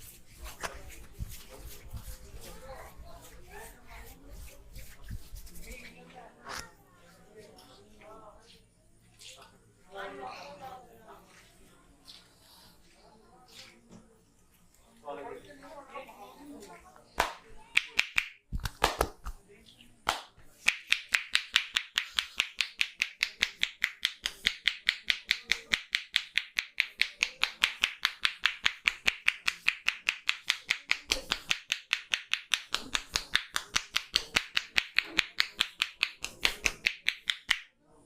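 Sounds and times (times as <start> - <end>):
hands clicking sharply: 17.2 - 19.4, 20.0 - 37.7.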